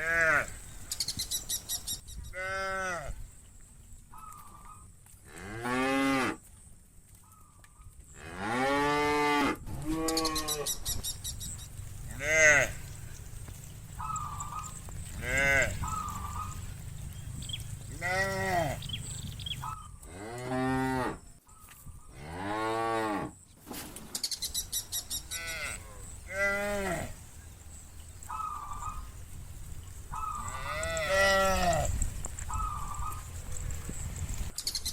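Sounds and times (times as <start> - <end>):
cattle mooing: 12.2 - 13.0, 14.1 - 19.2, 25.3 - 27.2, 30.3 - 31.9.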